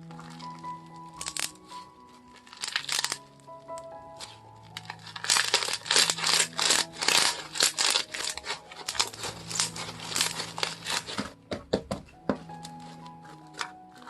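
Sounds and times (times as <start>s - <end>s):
slime crackling pops: 2.4s - 11.4s.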